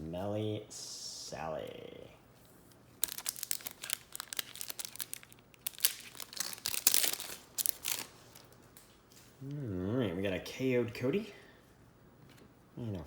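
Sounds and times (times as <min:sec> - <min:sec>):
card pack wrapper crinkling and tearing: 0:03.0 - 0:08.6.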